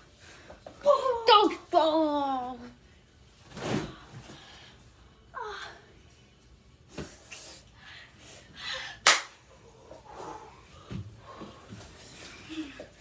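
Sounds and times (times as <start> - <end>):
sharp smack: 9.0 - 9.3.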